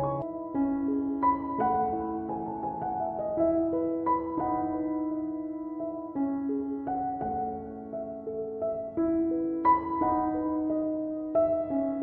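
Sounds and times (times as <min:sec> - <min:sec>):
soft piano melody: 0:00.0 - 0:12.0.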